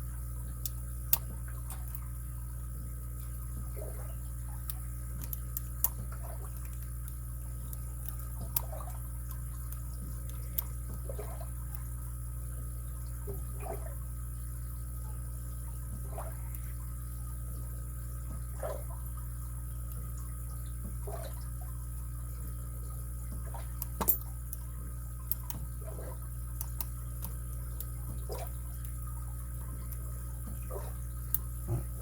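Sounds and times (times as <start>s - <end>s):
low steady hum: 0.0s - 32.0s
lock pick clicking and scraping: 23.8s - 24.3s.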